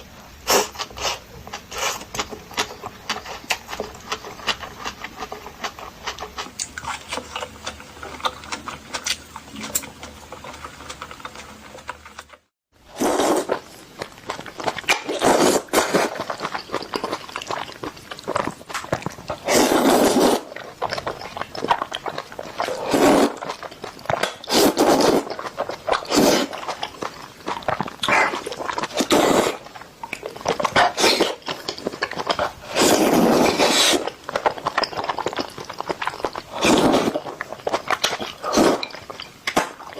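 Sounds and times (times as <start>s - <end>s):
person chewing: 0.5s - 39.9s
noodle slurps: 12.9s - 39.9s.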